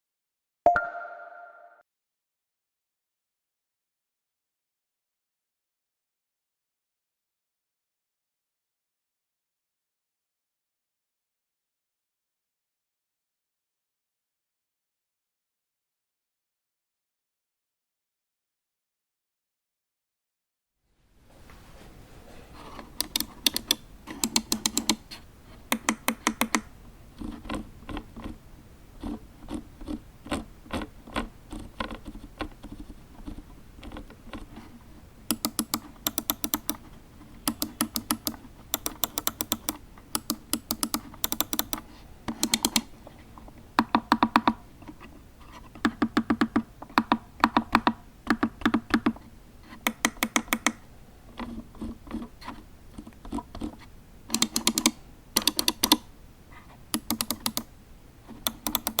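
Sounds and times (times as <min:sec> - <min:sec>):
mouse buttons clicking: 0:23.0 - 0:26.7, 0:35.3 - 0:42.9, 0:49.8 - 0:50.8, 0:54.3 - 0:56.0, 0:56.9 - 0:57.7, 0:58.3 - 0:59.0.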